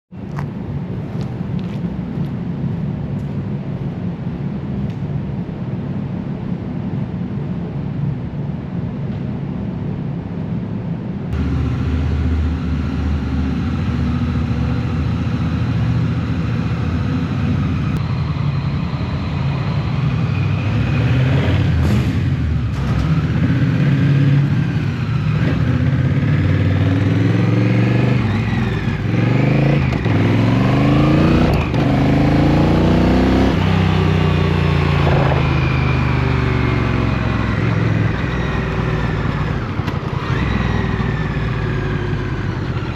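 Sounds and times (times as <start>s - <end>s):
motorcycle engine accelerating: 11.4s - 42.9s.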